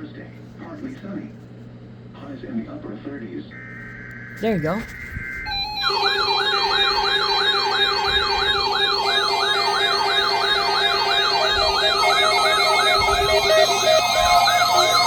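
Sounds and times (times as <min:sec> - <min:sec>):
electronic siren tones: 0:03.6 - 0:15.0
steady electronic tones: 0:03.6 - 0:15.0.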